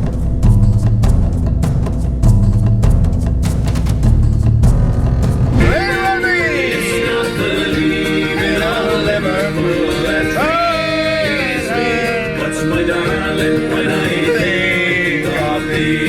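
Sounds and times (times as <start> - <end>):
gliding vocal or slide melody: 5.5 - 16.0
bluegrass music with banjo and guitar: 5.6 - 16.0.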